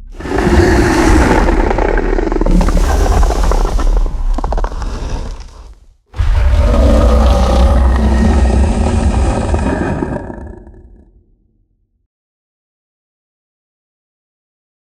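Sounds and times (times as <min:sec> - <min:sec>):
growling monster roar: 0:00.1 - 0:04.1, 0:06.2 - 0:11.2.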